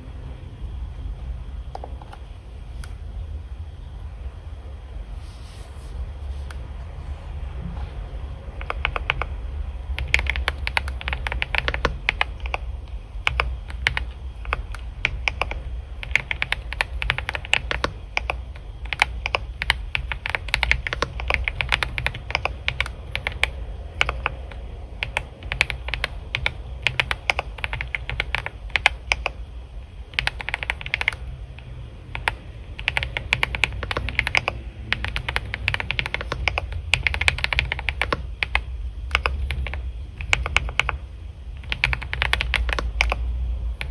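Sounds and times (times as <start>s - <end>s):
steady low hum: 0.0s - 43.9s
keyboard key clicks: 8.6s - 9.4s, 10.0s - 29.4s, 32.1s - 41.0s, 41.6s - 43.2s.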